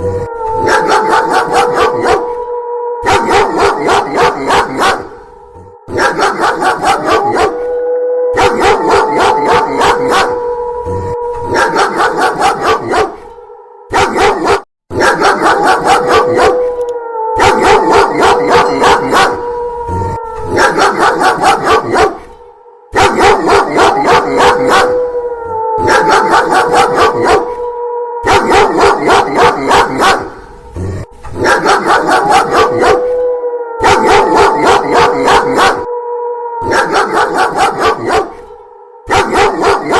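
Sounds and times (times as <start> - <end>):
wolf howl: 0.0 - 39.9
dog barking rapidly: 0.6 - 2.2, 3.0 - 5.1, 5.9 - 7.6, 11.5 - 13.2, 14.0 - 16.6, 20.5 - 22.2, 23.0 - 24.9, 25.8 - 27.4, 28.3 - 30.4, 31.4 - 33.0, 33.8 - 35.8, 36.7 - 38.4, 39.1 - 39.9.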